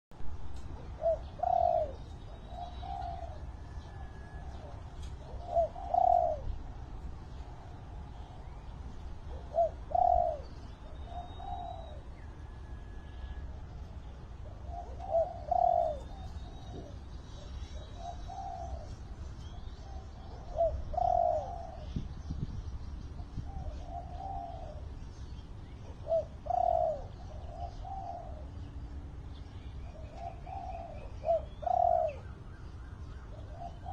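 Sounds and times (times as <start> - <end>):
dove cooing: 0.6 - 22.1, 23.2 - 25.0, 25.8 - 33.9.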